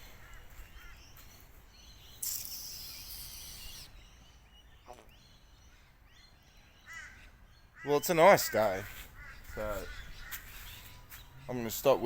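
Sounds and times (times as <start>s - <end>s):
faint bird chirps: 0.0s - 12.0s
high-pitched insect buzz: 2.1s - 3.9s.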